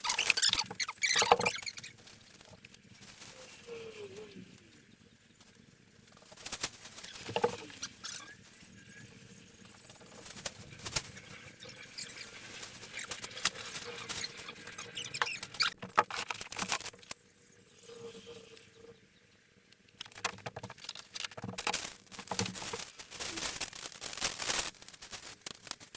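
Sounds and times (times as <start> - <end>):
small objects clicking and tapping: 19.7 - 25.9.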